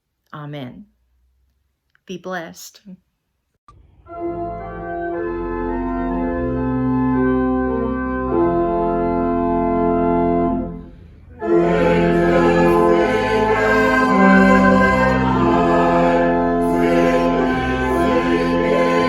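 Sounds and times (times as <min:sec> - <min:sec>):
church organ chords: 0:03.8 - 0:19.0
voices singing: 0:11.3 - 0:19.0.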